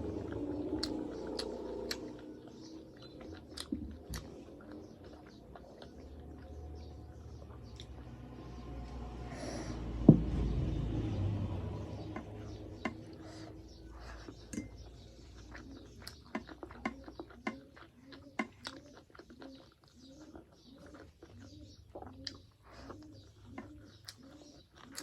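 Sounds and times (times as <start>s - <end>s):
dishes clicking and tapping: 14.5s - 14.9s, 16.2s - 17.7s, 18.3s - 18.6s.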